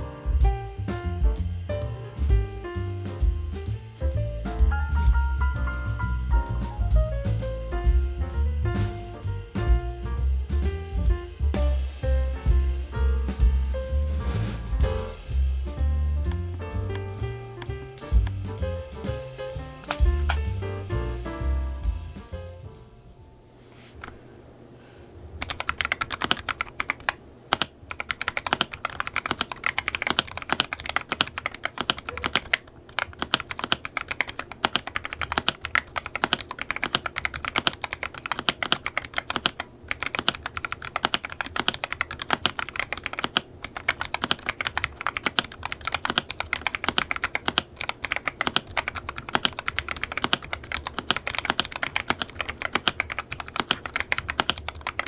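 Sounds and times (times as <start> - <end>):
mechanical keyboard typing: 25.4 - 55.0.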